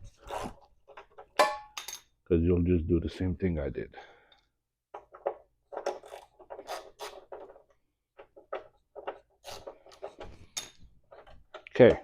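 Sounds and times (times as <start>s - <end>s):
hand tools scraping metal: 5.8s - 7.6s.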